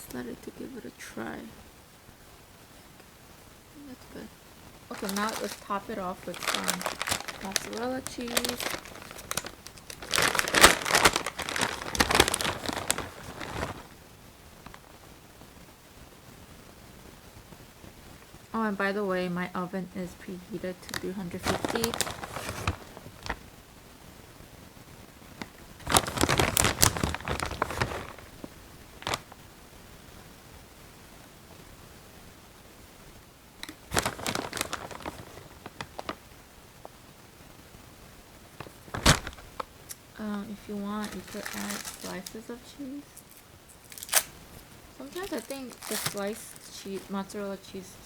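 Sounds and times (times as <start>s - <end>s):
plastic bag crinkling: 4.9s - 14.0s, 20.7s - 23.4s, 25.4s - 29.4s, 33.6s - 36.3s, 38.6s - 48.0s.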